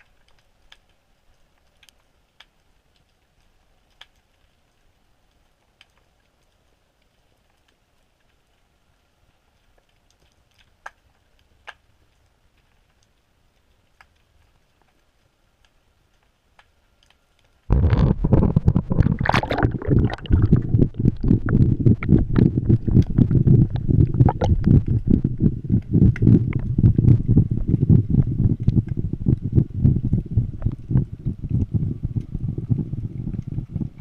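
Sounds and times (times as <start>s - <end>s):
water and wind buffeting housing: 17.7s - 34.0s.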